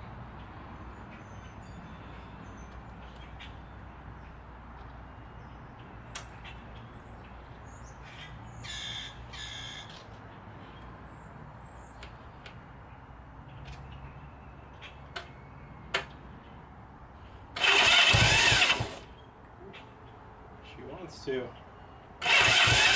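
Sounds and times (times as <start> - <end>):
bird harsh calls: 7.8 - 10.0.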